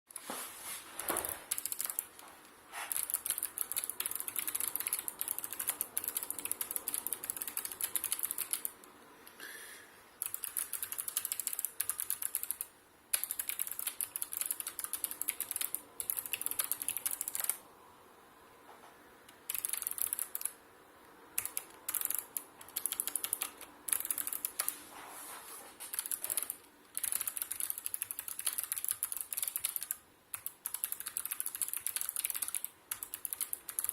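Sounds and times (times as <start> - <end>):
mechanical keyboard key clicks: 1.5 - 2.1, 2.9 - 8.8, 10.2 - 17.6, 19.3 - 20.6, 21.4 - 24.7, 25.9 - 33.9.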